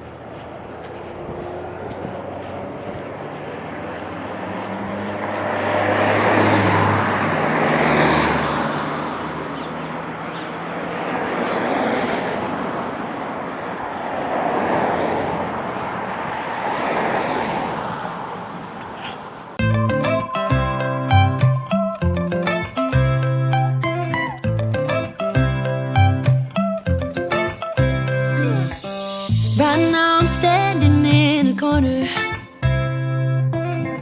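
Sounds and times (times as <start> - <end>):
vehicles passing: 0.0 - 34.0.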